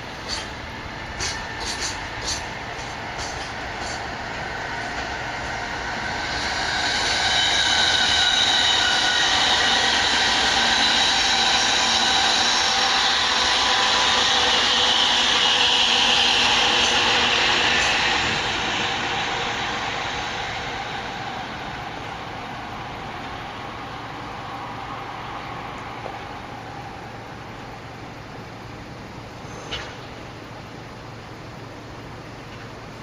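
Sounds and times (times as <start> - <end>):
freight train running: 0.0 - 33.0
train wheel clicks: 0.2 - 4.2
high-pitched wheel squeal: 4.8 - 27.4.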